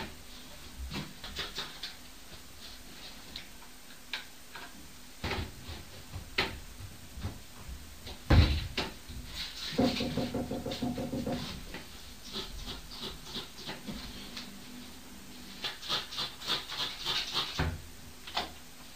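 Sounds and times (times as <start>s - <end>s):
knocks and thumps: 8.1s - 11.8s.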